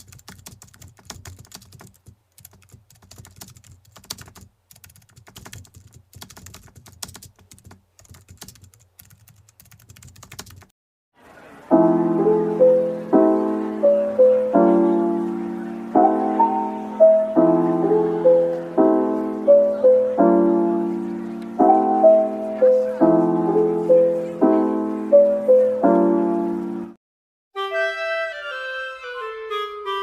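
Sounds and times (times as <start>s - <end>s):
typing on a computer keyboard: 0.0s - 10.7s
soft piano music: 11.5s - 27.0s.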